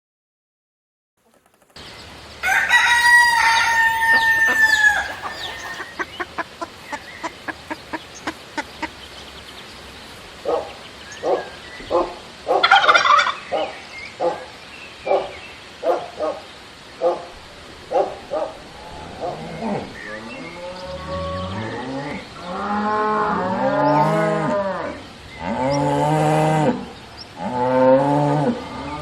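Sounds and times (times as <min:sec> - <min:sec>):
chickens clucking: 0:01.2 - 0:13.7
rooster crowing: 0:02.4 - 0:06.1
chicken squawk: 0:02.4 - 0:09.0.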